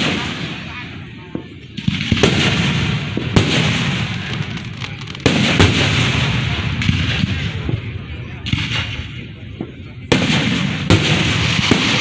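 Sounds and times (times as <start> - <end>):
firework bangs: 0.0 - 12.0
fireworks crackling: 0.0 - 12.0.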